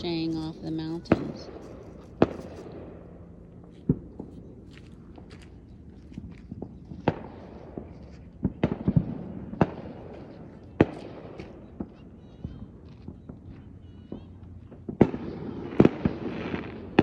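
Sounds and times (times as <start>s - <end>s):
fireworks banging: 0.0s - 3.2s, 3.8s - 17.0s
echo of bangs off mountains: 7.0s - 11.9s.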